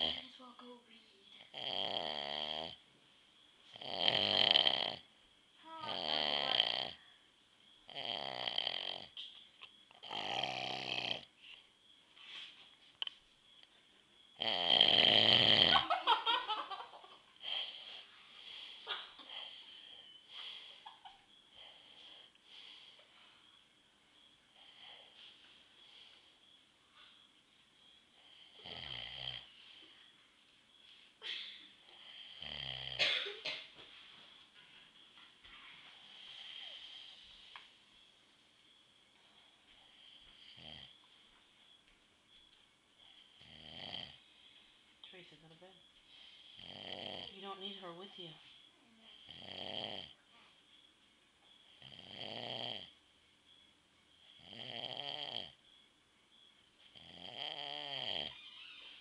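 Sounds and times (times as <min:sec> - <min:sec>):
man snoring deeply: 0:01.5 - 0:02.8, 0:03.7 - 0:05.1, 0:05.8 - 0:07.0, 0:07.9 - 0:09.1, 0:10.0 - 0:11.3, 0:14.4 - 0:15.8, 0:28.5 - 0:29.5, 0:32.0 - 0:33.0, 0:43.4 - 0:44.2, 0:46.5 - 0:47.4, 0:49.2 - 0:50.2, 0:51.8 - 0:53.0, 0:54.4 - 0:55.6, 0:56.9 - 0:58.4.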